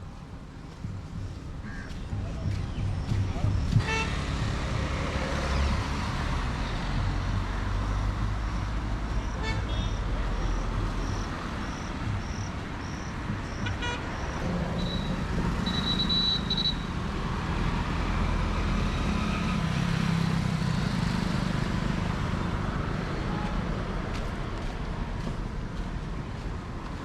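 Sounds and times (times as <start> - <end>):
vehicle engines running: 0.0 - 27.0
vehicle horn tooting: 3.8 - 4.3, 9.3 - 10.0, 13.6 - 16.9.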